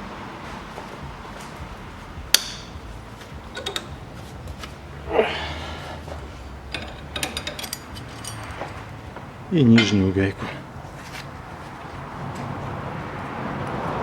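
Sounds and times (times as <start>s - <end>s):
sharp metallic clink: 2.3s - 2.8s.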